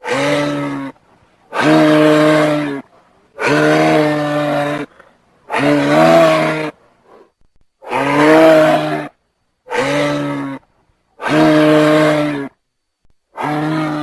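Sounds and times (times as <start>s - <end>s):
giraffe bellowing: 0.0s - 2.8s, 3.4s - 4.9s, 5.5s - 6.8s, 7.8s - 12.6s, 13.4s - 14.0s.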